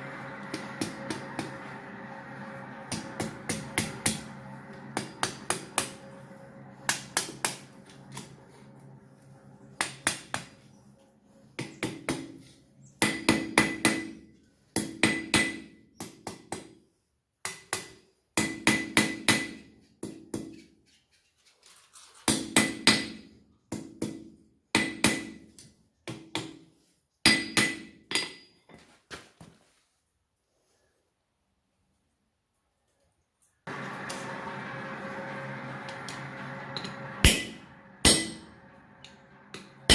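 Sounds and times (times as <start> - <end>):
hammer blows on an anvil: 0.2 - 8.5, 35.8 - 39.9.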